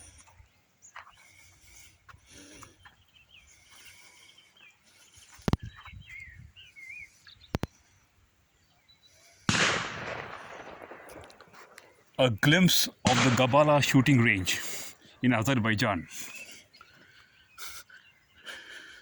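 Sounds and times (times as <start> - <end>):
birds chirping: 0.0 - 19.0
shotgun shots: 9.5 - 11.8, 13.0 - 14.9.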